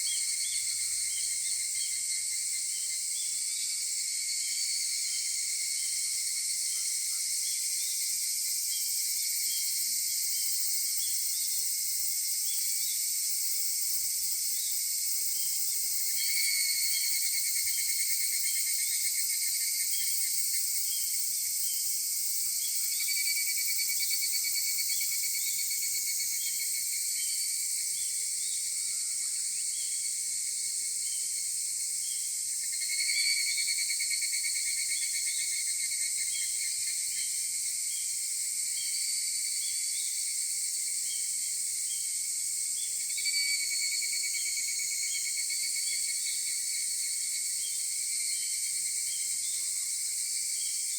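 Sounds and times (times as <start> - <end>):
cicadas chorus: 0.0 - 50.9
nearer cicada calling loudly: 15.4 - 50.9.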